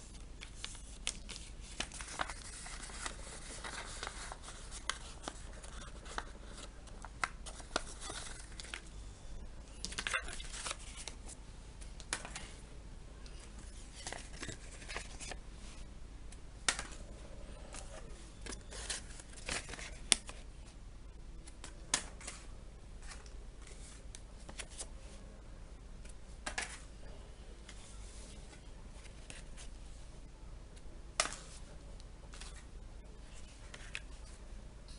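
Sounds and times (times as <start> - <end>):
paper rustling and crinkling: 0.0 - 8.9, 9.8 - 11.4, 13.4 - 15.8, 17.6 - 20.5.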